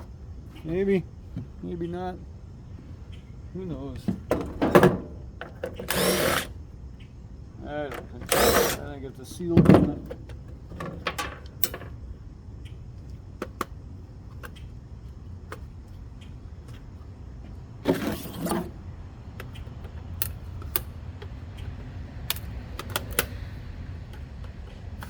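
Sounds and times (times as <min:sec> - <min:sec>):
hand tools clicking and knocking: 0:04.0 - 0:06.5, 0:07.9 - 0:08.8.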